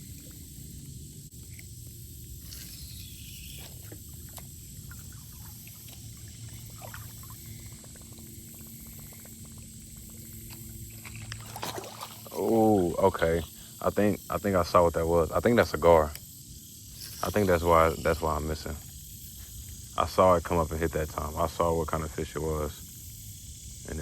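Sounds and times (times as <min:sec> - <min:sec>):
light water sounds: 0:00.0 - 0:13.8
steady high hiss: 0:00.0 - 0:24.0.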